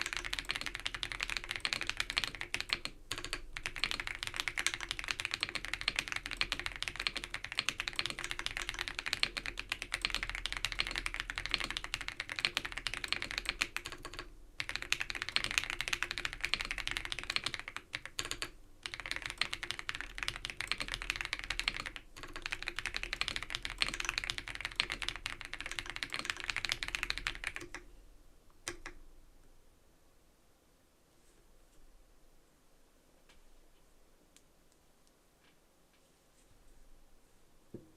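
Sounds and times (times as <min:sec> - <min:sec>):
mechanical keyboard typing: 0:00.0 - 0:27.8, 0:28.6 - 0:29.0.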